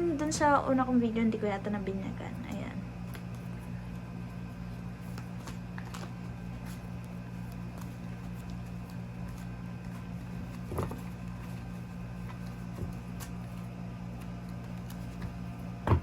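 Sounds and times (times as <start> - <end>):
low electrical hum: 0.0 - 16.0.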